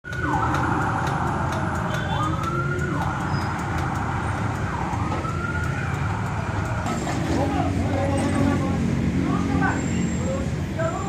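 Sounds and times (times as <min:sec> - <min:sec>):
wailing siren: 0:00.0 - 0:08.9.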